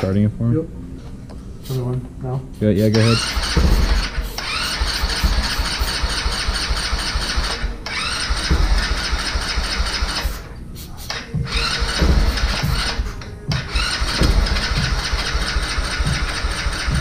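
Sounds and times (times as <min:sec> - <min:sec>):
motorcycle starter cranking engine: 0:03.0 - 0:10.5, 0:11.5 - 0:13.0, 0:13.6 - 0:17.0.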